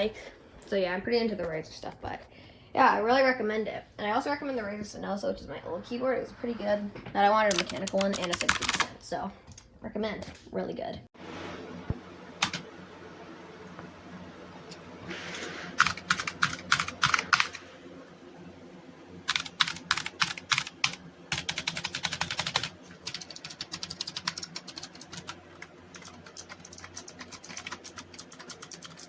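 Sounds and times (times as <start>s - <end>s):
clicky keyboard typing: 7.4s - 9.6s, 19.3s - 29.0s.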